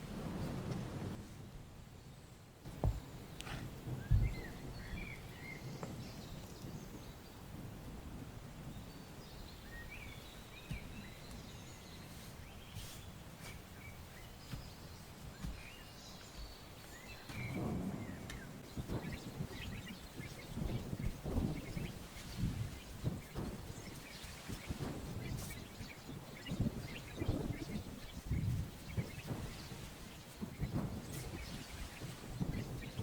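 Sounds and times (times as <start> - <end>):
low knocks and thuds: 2.7 - 5.1, 10.6 - 11.6, 17.2 - 33.0
small birds chirping: 2.7 - 7.6, 8.6 - 33.0.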